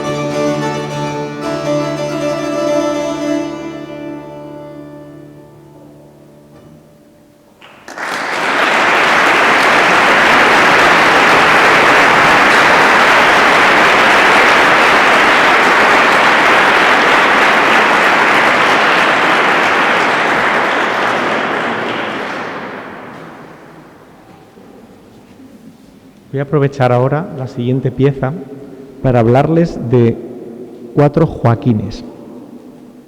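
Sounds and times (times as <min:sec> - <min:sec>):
pipe organ chord: 0:00.0 - 0:25.0
audience applause: 0:07.6 - 0:24.6.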